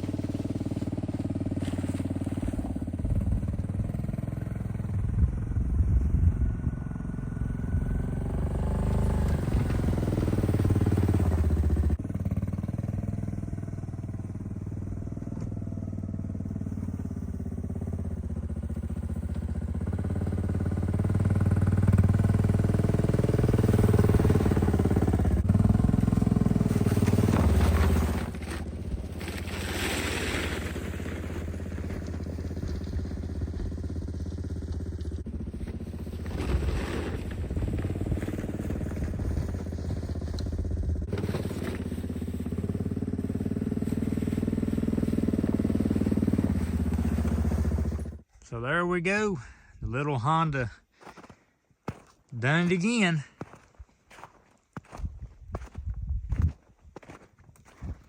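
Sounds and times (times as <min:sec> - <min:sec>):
engine revving under load: 0:00.0 - 0:48.3.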